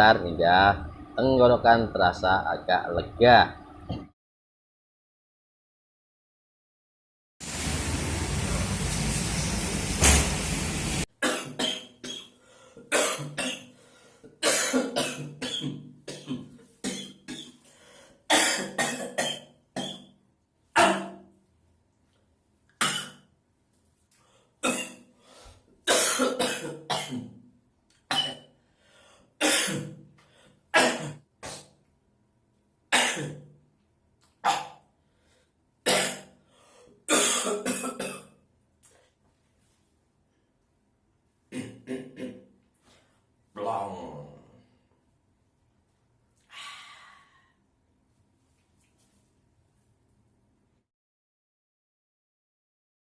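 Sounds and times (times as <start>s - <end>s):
man coughing: 12.9s - 13.7s, 14.4s - 17.6s, 18.3s - 20.0s, 25.9s - 27.3s, 29.4s - 30.0s, 30.7s - 31.7s, 32.9s - 33.4s, 37.1s - 38.3s
throat clearing: 34.4s - 34.8s, 41.5s - 42.5s.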